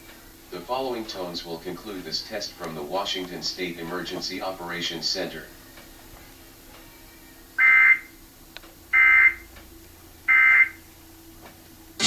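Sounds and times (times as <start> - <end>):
digital data tone bursts: 7.6 - 8.1, 9.0 - 9.4, 10.3 - 10.8.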